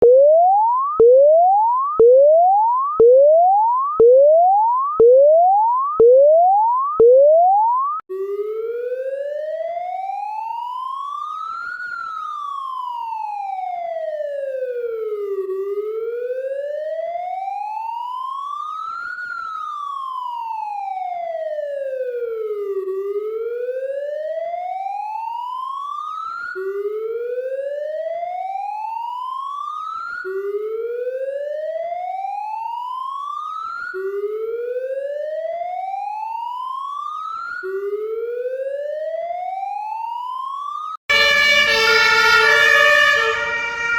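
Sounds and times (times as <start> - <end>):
police siren wailing: 7.4 - 43.9.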